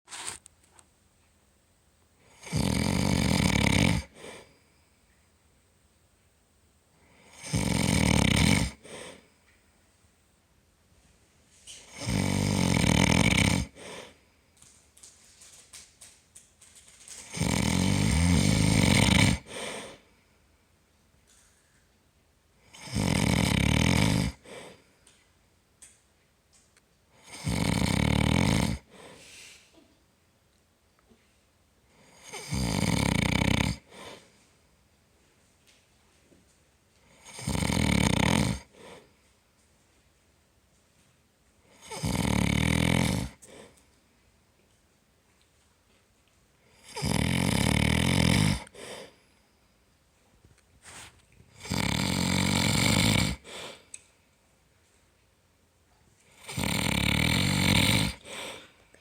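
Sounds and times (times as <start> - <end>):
man snoring loudly: 2.3 - 4.4, 7.2 - 9.2, 11.9 - 14.0, 17.3 - 19.7, 22.7 - 24.5, 27.2 - 28.9, 32.0 - 34.0, 37.2 - 38.8, 41.8 - 43.4, 46.8 - 48.8, 51.5 - 53.5, 56.4 - 58.3
soft breath: 4.0 - 5.3, 8.7 - 9.8, 13.7 - 14.8, 19.4 - 22.0, 24.4 - 25.4, 28.8 - 30.0, 33.8 - 34.8, 38.6 - 39.4, 48.6 - 49.9, 50.8 - 51.6, 53.3 - 54.4, 58.1 - 59.0.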